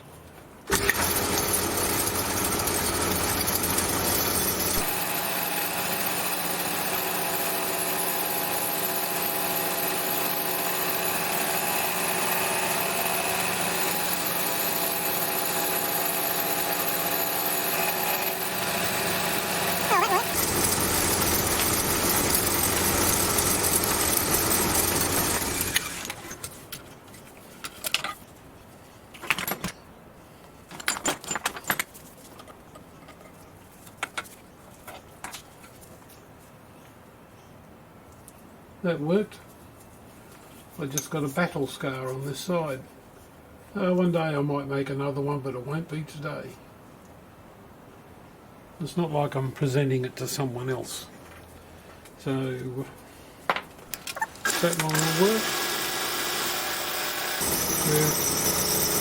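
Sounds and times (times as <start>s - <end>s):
milling machine cutting metal: 0.7s - 26.4s, 54.4s - 59.0s.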